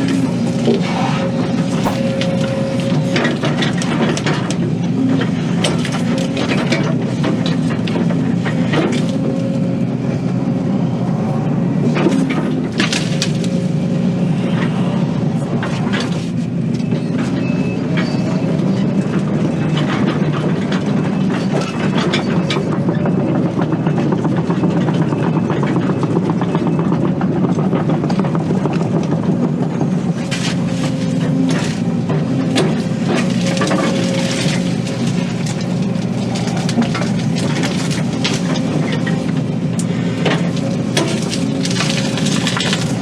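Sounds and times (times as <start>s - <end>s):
excavator diesel engine running: 1.4s - 43.0s.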